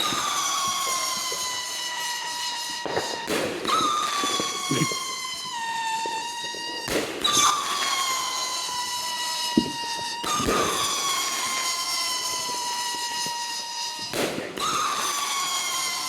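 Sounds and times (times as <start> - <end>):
screeching firework whistle: 0.0 - 16.0
small pops: 4.3 - 5.4, 9.5 - 10.5
burst of noise: 4.4 - 14.3.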